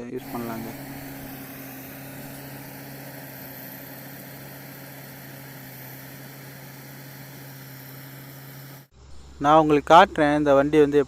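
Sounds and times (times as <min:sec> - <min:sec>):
harvester engine droning: 0:00.0 - 0:08.9.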